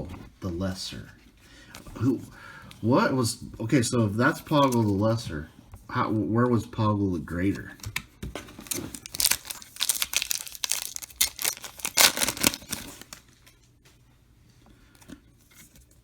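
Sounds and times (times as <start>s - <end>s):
plastic wrapper tearing and crinkling: 8.6s - 13.3s.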